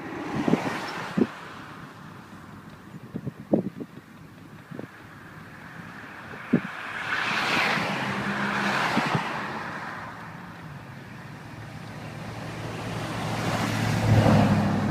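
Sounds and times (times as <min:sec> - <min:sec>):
vehicle approaching: 0:05.0 - 0:14.9
vehicle passing by: 0:06.4 - 0:14.9.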